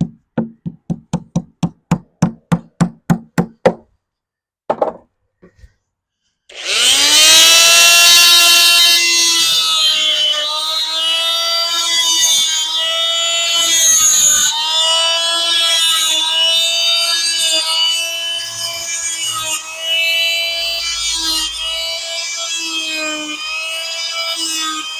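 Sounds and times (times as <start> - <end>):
power tool motor whining: 6.5 - 24.9.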